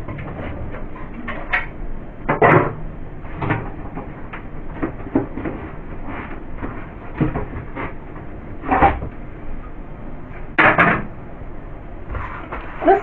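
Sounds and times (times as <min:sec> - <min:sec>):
items knocking and clattering: 0:00.0 - 0:09.1, 0:10.5 - 0:11.1.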